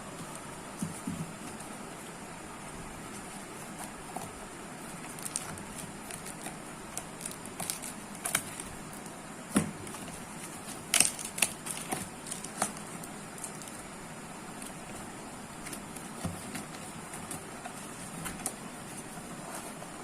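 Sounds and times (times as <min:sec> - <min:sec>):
steady low hiss: 0:00.0 - 0:20.0
box packaging handled and opened: 0:03.0 - 0:09.0, 0:09.6 - 0:20.0
packaging crinkling: 0:03.2 - 0:09.1, 0:09.8 - 0:13.9.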